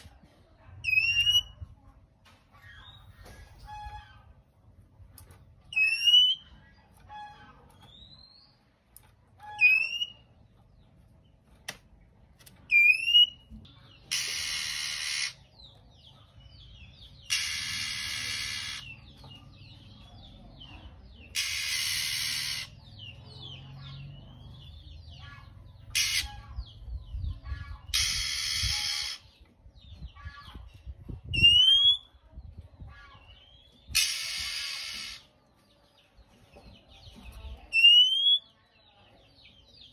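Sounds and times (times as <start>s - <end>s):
soft bird twittering: 0.0s - 1.9s, 5.2s - 11.4s, 12.4s - 39.9s
bird harsh hissing rasps: 14.1s - 15.4s, 17.3s - 18.9s, 21.4s - 22.8s, 25.9s - 26.3s, 27.9s - 29.2s, 34.0s - 35.3s.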